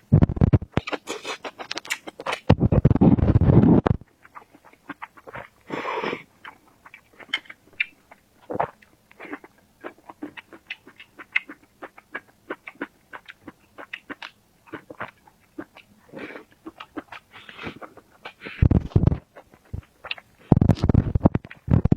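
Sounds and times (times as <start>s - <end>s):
wet chewing: 0.4s - 5.7s, 6.4s - 21.9s
lip-smacking clicks: 0.5s - 2.5s.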